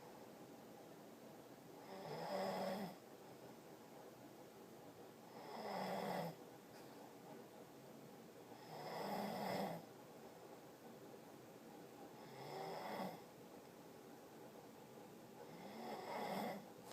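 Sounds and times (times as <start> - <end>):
snoring with buzzing rattle: 1.8 - 3.0, 5.2 - 6.4, 8.5 - 9.9, 12.1 - 13.4, 15.4 - 16.8.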